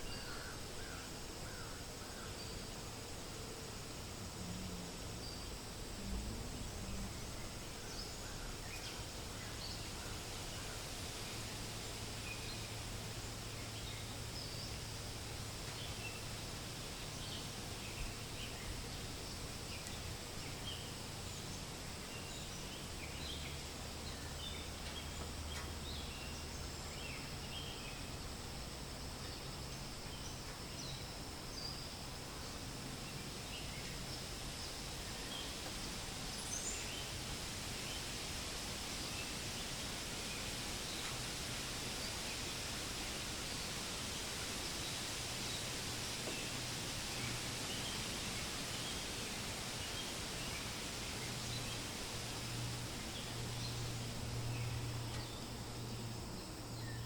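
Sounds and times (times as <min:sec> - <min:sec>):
wind rustling leaves: 0:00.0 - 0:57.0.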